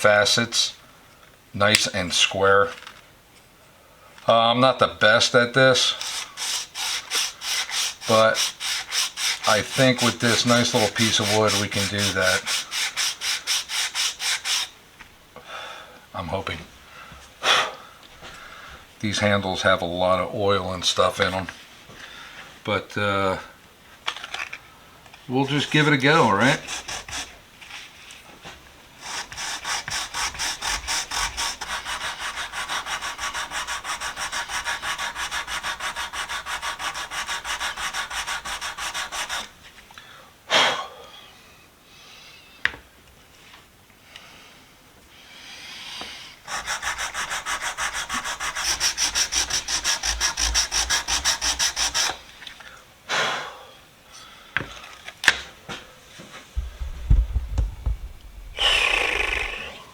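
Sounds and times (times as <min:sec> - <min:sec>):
sandpaper rubbing on wood: 0:05.8 - 0:14.7, 0:25.5 - 0:27.8, 0:29.0 - 0:39.6, 0:46.5 - 0:52.2
short knocks: 0:56.6 - 0:58.7.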